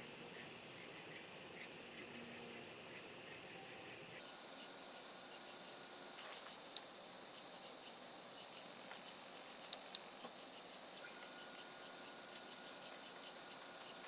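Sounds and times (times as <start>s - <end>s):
burning wood popping: 4.2s - 14.0s
fire hissing: 4.2s - 14.0s.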